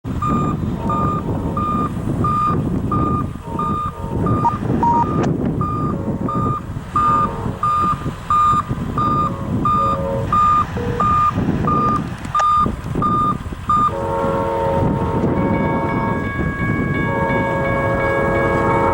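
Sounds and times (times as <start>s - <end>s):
engine rumble: 0.0s - 18.9s
high electronic warning beeps: 0.2s - 14.0s
locomotive horn: 0.3s - 8.3s, 9.2s - 11.2s, 13.7s - 18.9s.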